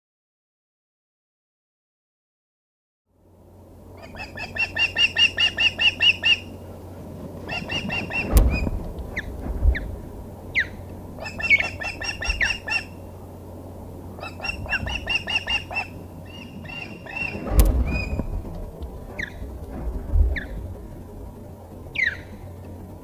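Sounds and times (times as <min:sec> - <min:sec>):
ospreys chirping: 0:03.8 - 0:23.0
downslurred bird whistles: 0:04.0 - 0:06.6, 0:07.4 - 0:09.9, 0:10.5 - 0:13.1, 0:14.2 - 0:19.5, 0:21.9 - 0:22.6
sharp knock with rumble: 0:07.7 - 0:12.8, 0:17.1 - 0:22.5.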